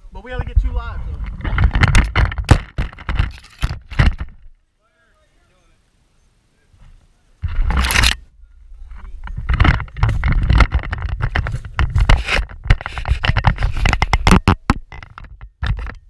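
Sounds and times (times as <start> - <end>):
low wind-like rumble: 0.0 - 4.4
rustling and knocking near microphone: 0.5 - 4.6, 6.8 - 16.0.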